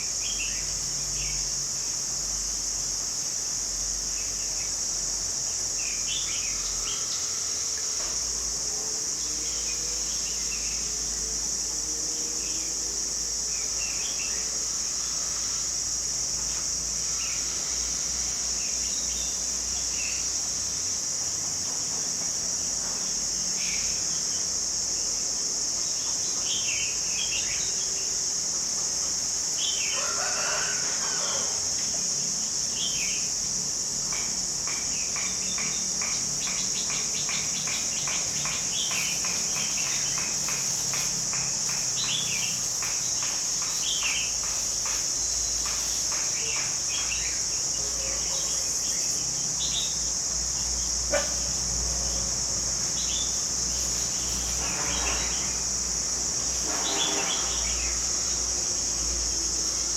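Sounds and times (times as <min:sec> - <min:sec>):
high-pitched insect drone: 0:00.0 - 0:59.9
rooster crowing: 0:29.8 - 0:32.0.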